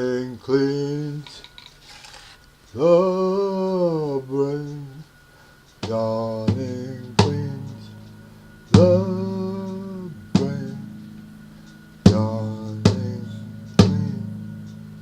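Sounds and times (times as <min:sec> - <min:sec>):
steady low held tone: 0:02.7 - 0:15.0
pitched drum hits: 0:06.5 - 0:15.0.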